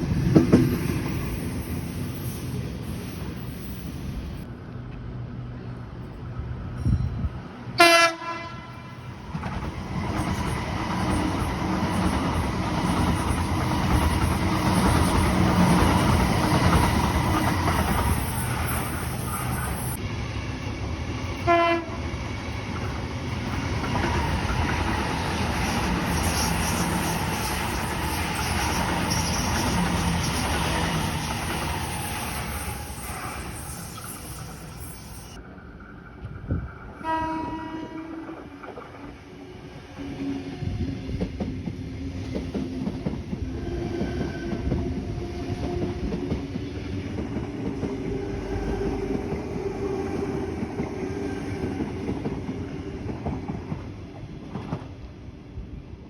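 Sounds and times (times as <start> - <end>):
train rumble and wheel clatter: 0.0 - 56.0
train horn blasts: 7.8 - 9.1, 21.4 - 22.0, 37.0 - 38.5.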